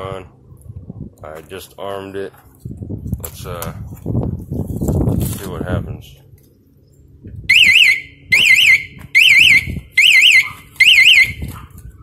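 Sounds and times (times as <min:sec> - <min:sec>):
motorcycle alarm chirps: 0:07.5 - 0:11.5.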